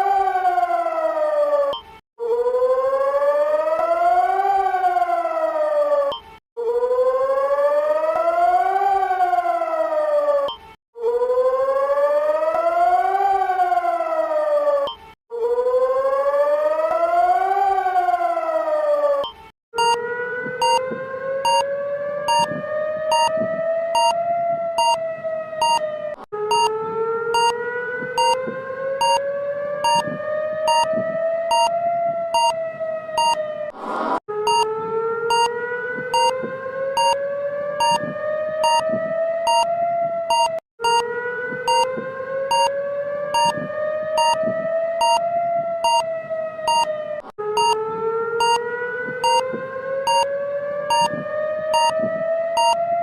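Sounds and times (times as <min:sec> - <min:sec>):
rising siren tone: 0:00.0 - 0:53.0
rising whoosh: 0:33.7 - 0:34.3
short alarm beeps: 0:40.3 - 0:41.0, 0:47.6 - 0:47.8, 0:51.8 - 0:52.0, 0:52.6 - 0:52.8.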